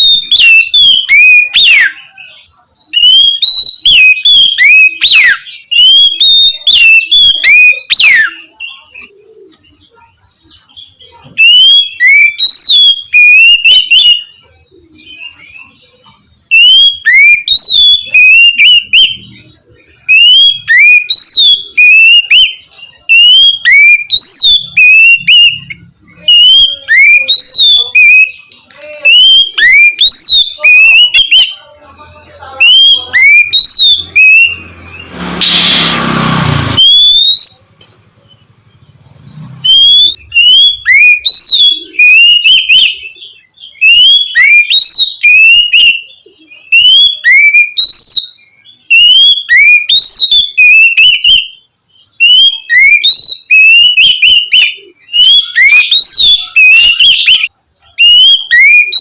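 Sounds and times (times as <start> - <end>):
songbird whistling song: 0.0 - 59.0.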